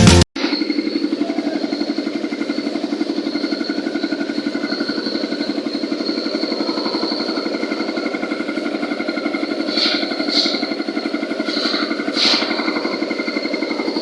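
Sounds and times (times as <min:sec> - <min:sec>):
concrete mixer engine running: 0:00.0 - 0:14.0.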